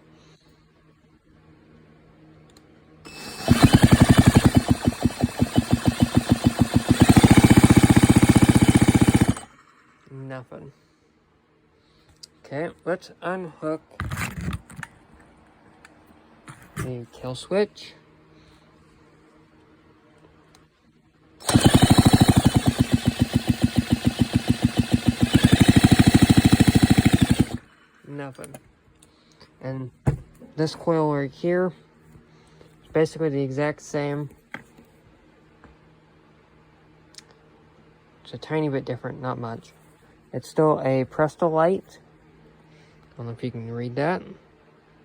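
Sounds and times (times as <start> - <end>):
chainsaw engine cranking: 3.1 - 9.6, 21.4 - 27.7.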